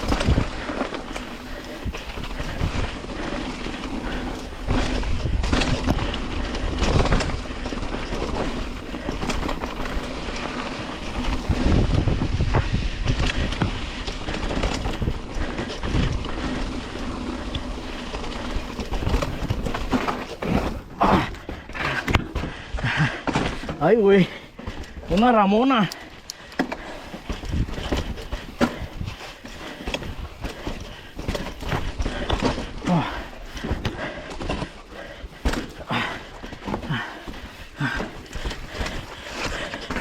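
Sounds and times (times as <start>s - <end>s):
rumbling and rattling ride: 0.0s - 40.0s
wind buffeting microphone: 11.0s - 19.8s, 27.2s - 32.3s.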